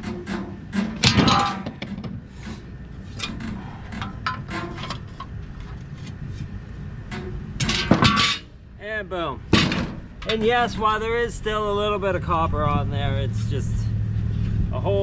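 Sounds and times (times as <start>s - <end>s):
loud metal clank: 0.0s - 5.4s, 7.0s - 8.6s, 9.5s - 11.4s
metal knocks and scrapes: 0.0s - 8.6s, 9.5s - 11.5s.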